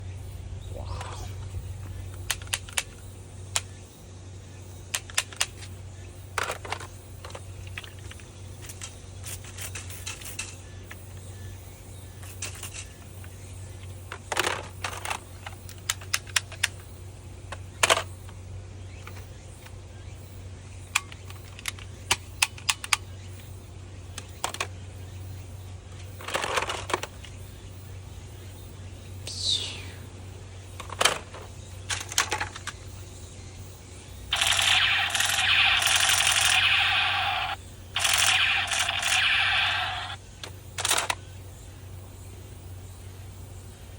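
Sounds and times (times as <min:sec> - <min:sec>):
toy blaster plastic clicks: 0:34.3 - 0:40.2.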